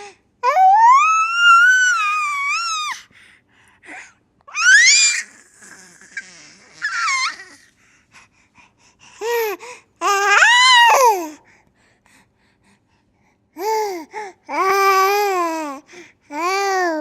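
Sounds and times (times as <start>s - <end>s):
baby vocalizing: 5.0s - 7.7s.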